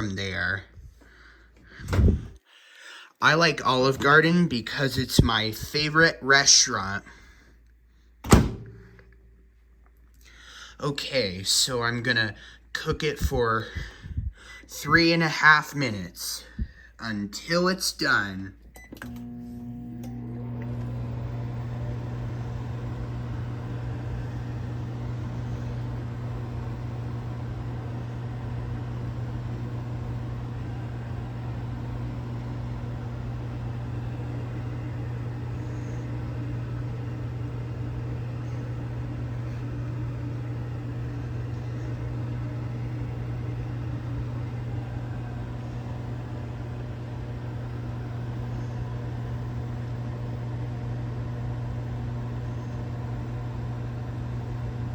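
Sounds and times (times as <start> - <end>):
microwave oven humming and whirring: 0.0 - 2.4, 3.2 - 9.7, 10.4 - 54.9.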